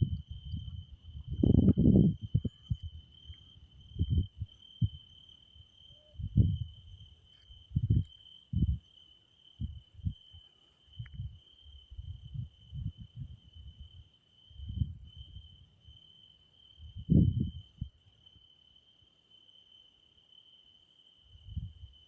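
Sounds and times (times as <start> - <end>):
dull low thumps: 0.0 - 3.1, 3.9 - 5.0
crickets trilling: 0.0 - 22.0.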